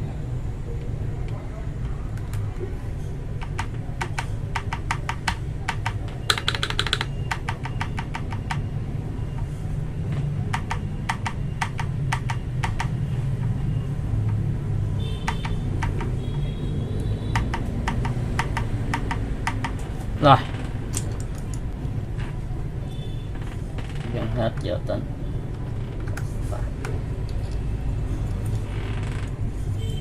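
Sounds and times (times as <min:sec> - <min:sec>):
mechanical keyboard clicks: 0:03.4 - 0:08.7, 0:17.0 - 0:19.8.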